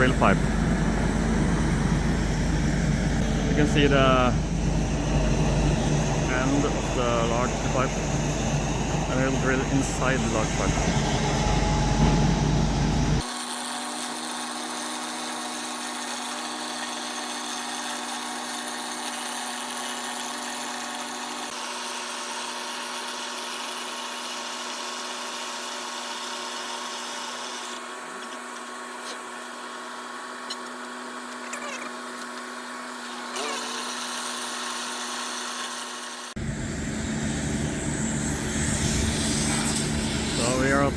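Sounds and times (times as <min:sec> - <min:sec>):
loud low rumble: 0:00.0 - 0:13.2, 0:36.4 - 0:40.9
drilling rig whine: 0:00.0 - 0:13.3, 0:36.3 - 0:40.9.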